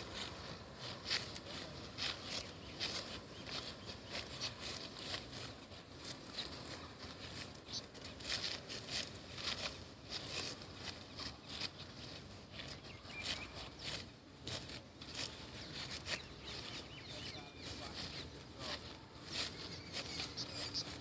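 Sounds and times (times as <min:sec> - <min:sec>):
rice stalks rustling when cut: 0:00.0 - 0:21.0.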